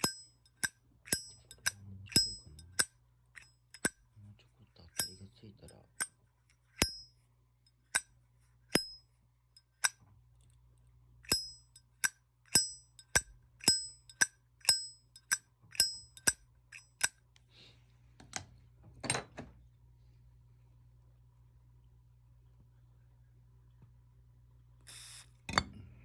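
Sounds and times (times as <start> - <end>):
lighter lid clinking: 0.0 - 4.0, 5.0 - 5.2, 11.2 - 17.1
lighter wheel rasping: 0.0 - 4.0, 6.7 - 7.1, 11.2 - 17.2, 24.9 - 25.3.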